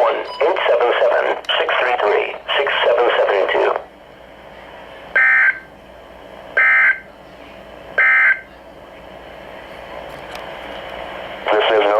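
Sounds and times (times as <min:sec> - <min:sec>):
faint radio hiss: 0:00.0 - 0:05.0, 0:10.9 - 0:11.9.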